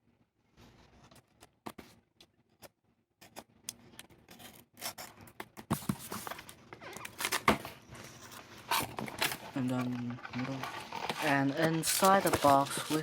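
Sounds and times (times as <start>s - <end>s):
packaging clicks and scrapes: 2.6s - 13.0s
cardboard box being opened: 8.2s - 13.0s.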